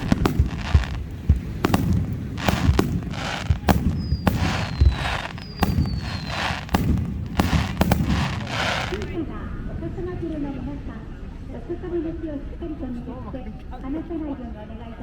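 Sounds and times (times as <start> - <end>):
crackling hiss: 0.0 - 9.2
fireworks bursting with bangs: 0.0 - 9.2
high falling whistles: 2.4 - 9.1.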